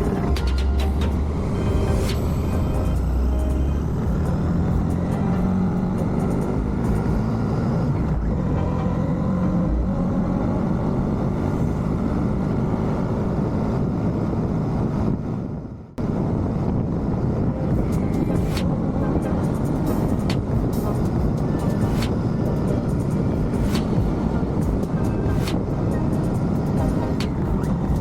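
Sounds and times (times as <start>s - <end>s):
wind rush over microphone: 9.3s - 28.0s.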